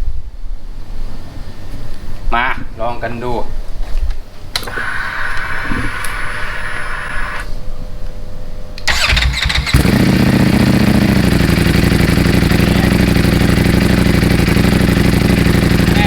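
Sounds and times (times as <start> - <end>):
faint electrical whine: 0.0 - 9.7
starter motor cranking: 4.6 - 7.5, 8.8 - 16.0
motorcycle engine idling loudly: 8.9 - 16.0.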